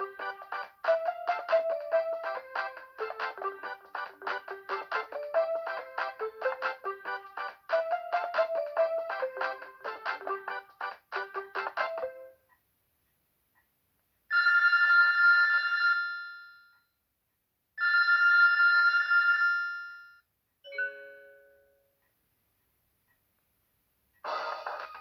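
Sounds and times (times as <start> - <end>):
fast ringtone tune: 0.0 - 12.3
telephone bell ring: 14.3 - 16.9, 17.8 - 21.7.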